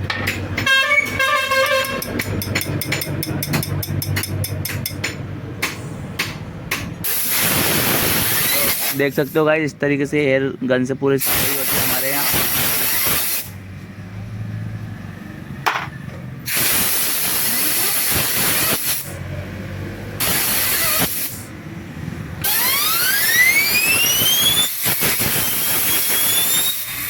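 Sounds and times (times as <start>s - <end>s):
compressed air blow gun blasts: 7.0s - 9.0s, 11.2s - 13.6s, 16.5s - 19.2s, 20.2s - 21.5s, 22.4s - 27.0s
whistle rising in pitch: 22.5s - 27.0s.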